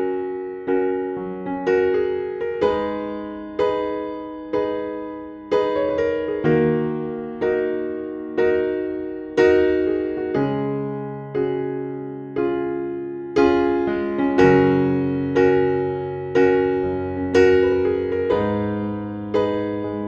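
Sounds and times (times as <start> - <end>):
soft piano chords: 0.0 - 20.0.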